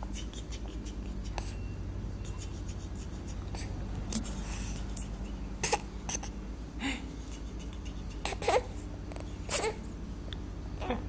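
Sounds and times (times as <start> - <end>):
baby hiccuping: 5.6 - 6.3.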